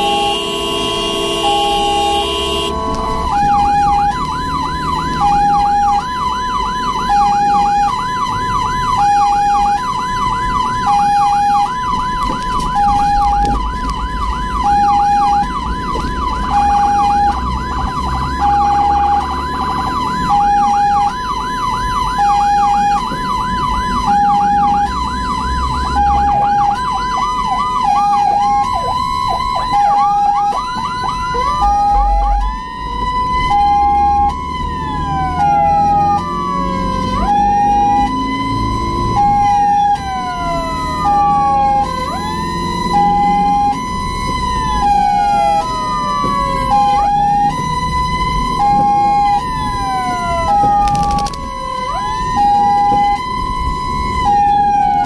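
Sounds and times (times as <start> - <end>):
vehicle horn: 0.0 - 3.6
ambulance siren hi-lo two-tone: 0.0 - 55.0
siren yelp: 0.0 - 55.0.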